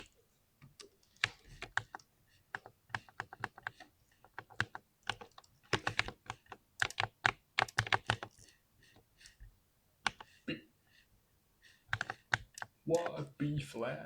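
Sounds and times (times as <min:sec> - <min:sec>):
mechanical keyboard typing: 0:00.0 - 0:09.4, 0:10.0 - 0:10.4, 0:11.9 - 0:13.3.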